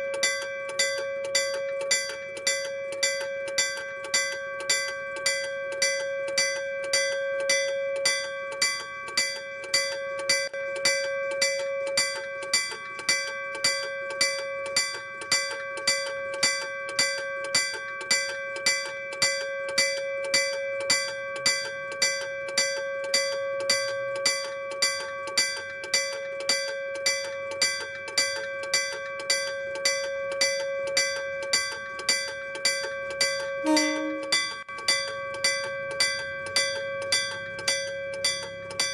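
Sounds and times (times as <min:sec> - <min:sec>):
level crossing bell ringing: 0:33.6 - 0:34.5.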